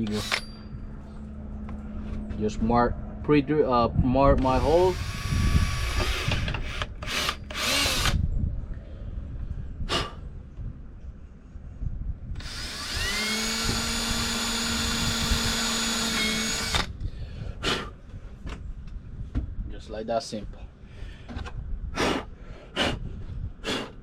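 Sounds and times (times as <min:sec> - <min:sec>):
power drill running: 0:00.0 - 0:00.5, 0:04.6 - 0:08.2, 0:12.4 - 0:16.9.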